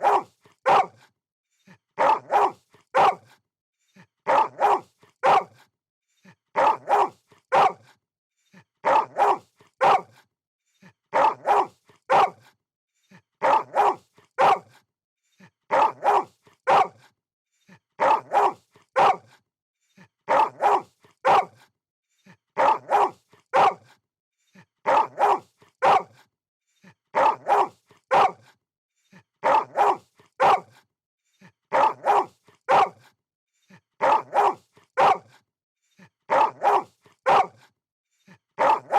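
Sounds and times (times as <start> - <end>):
dog barking: 0.0 - 1.1, 2.0 - 3.4, 4.3 - 5.7, 6.6 - 8.0, 8.8 - 10.2, 11.1 - 12.5, 13.4 - 14.8, 15.7 - 17.1, 18.0 - 19.4, 20.3 - 21.6, 22.6 - 24.0, 24.8 - 26.3, 27.1 - 28.6, 29.4 - 30.8, 31.7 - 33.1, 34.0 - 35.4, 36.3 - 37.7, 38.6 - 38.9.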